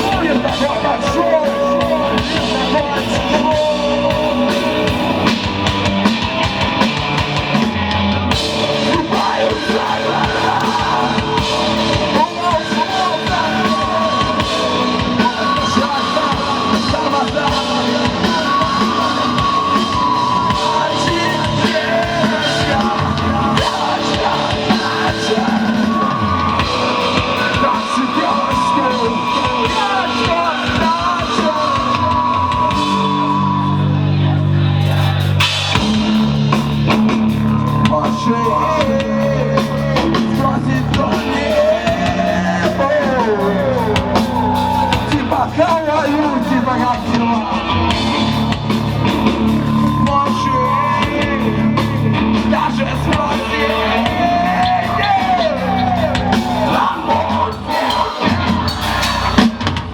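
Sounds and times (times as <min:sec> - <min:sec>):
drum kit: 0:00.0 - 0:59.9
guitars: 0:00.0 - 0:59.9
person singing and yelling: 0:00.0 - 0:59.9.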